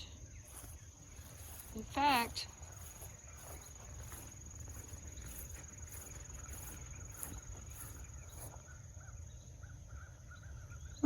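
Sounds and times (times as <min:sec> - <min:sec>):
insect pulsing chirr: 0:00.0 - 0:11.0.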